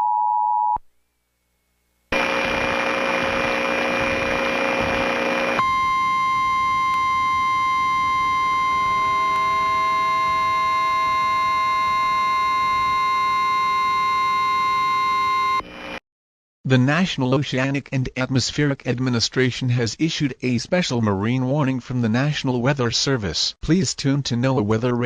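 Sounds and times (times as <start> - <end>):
high steady alarm tone: 2.1 - 15.6
harsh electronic buzzing: 2.1 - 16.0.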